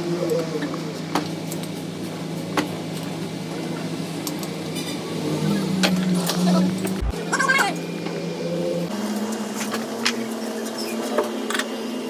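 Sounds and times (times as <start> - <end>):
engine humming: 3.5 - 9.8.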